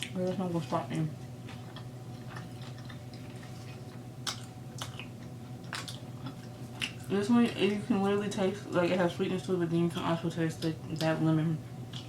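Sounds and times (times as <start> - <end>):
wet chewing: 1.1 - 7.2
mouth clicks and smacks: 4.2 - 7.0.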